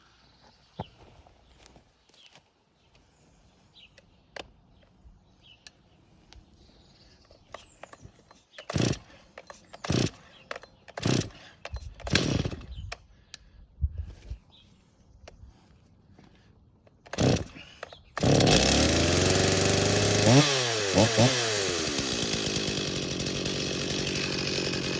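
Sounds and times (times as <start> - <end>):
chainsaw starter cord pulls: 7.4 - 13.0, 16.9 - 24.9
chainsaw engine cranking: 7.5 - 12.9, 16.9 - 24.9.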